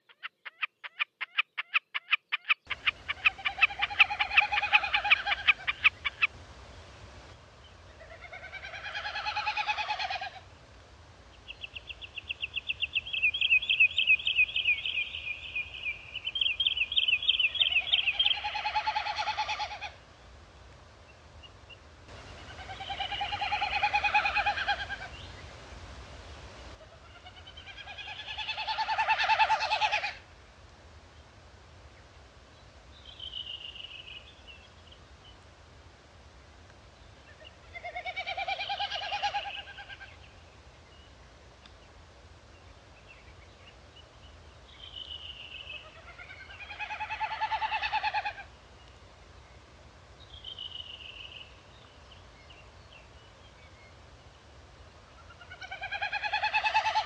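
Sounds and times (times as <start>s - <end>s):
snipe winnowing: 0.0s - 6.4s, 22.1s - 25.4s.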